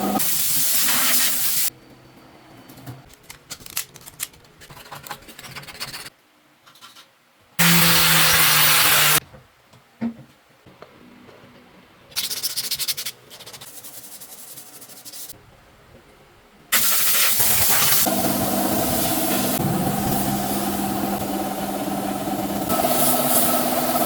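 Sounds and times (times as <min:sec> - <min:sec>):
loud hiss: 0:00.2 - 0:01.7, 0:07.6 - 0:09.2, 0:16.7 - 0:21.9, 0:22.6 - 0:24.0
motor running: 0:18.0 - 0:24.0.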